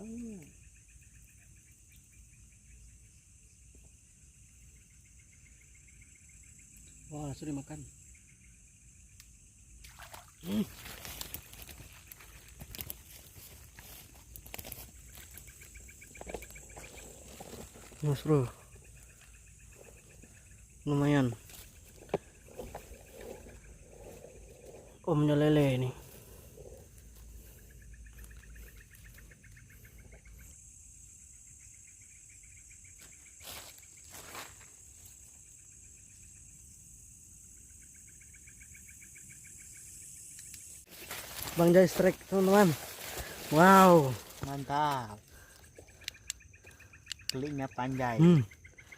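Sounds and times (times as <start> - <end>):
high-pitched insect drone: 0.0 - 48.9
rapid insect chirping: 0.0 - 48.9.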